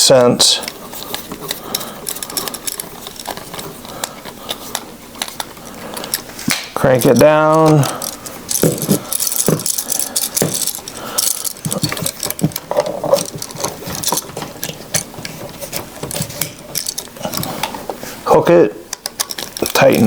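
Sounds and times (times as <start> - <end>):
screwdriver tightening a screw: 1.3 - 6.2, 6.8 - 17.7.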